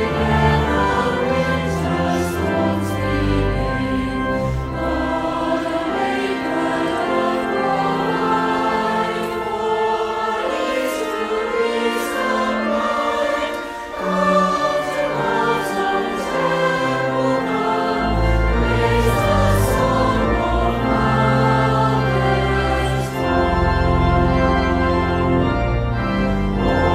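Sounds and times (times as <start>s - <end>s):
choir singing a hymn: 0.0s - 26.9s
instrumental accompaniment: 0.0s - 26.9s.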